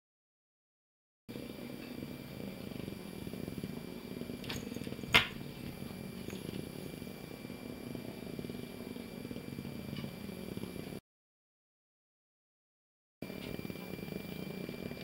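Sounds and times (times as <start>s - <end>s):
cat purring: 1.3s - 11.0s, 13.3s - 15.0s.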